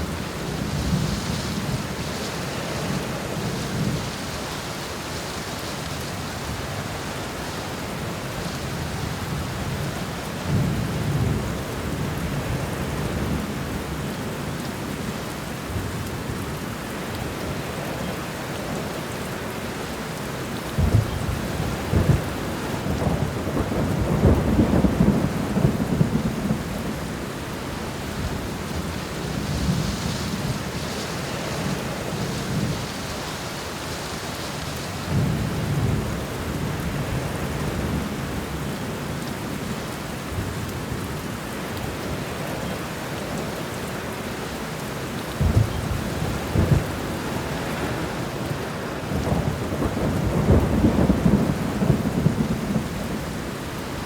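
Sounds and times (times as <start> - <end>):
rain pattering on a window: 0.0 - 54.0
rolls of thunder: 49.0 - 53.3.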